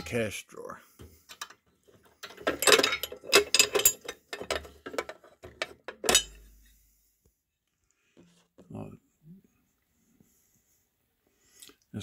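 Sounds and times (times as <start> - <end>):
metal lock clicking and rattling: 2.2 - 6.4
sharp metal clank: 6.0 - 6.5.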